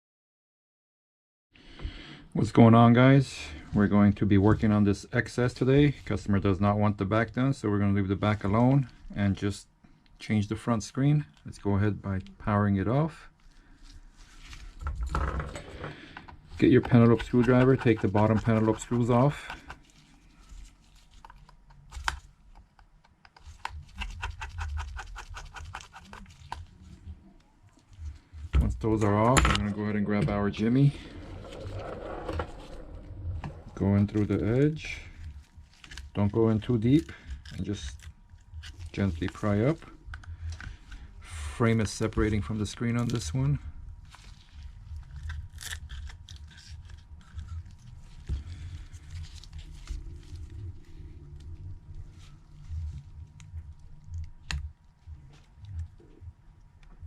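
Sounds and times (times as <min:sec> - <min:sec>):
low hum: 0:26.1 - 0:57.0.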